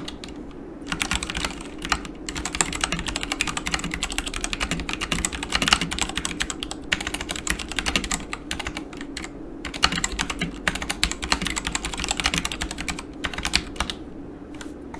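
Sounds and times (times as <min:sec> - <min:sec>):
mechanical keyboard typing: 0:00.0 - 0:14.0.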